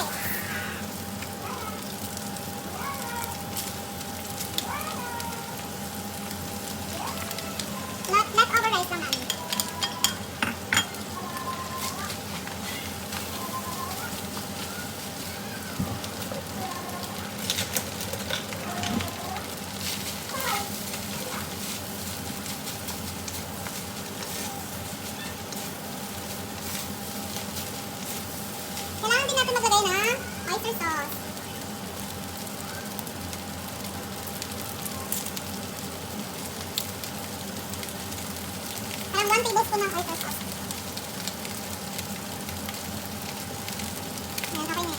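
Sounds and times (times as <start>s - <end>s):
food sizzling in a wok: 0.0s - 44.9s
spatula scraping a pan: 19.8s - 25.8s.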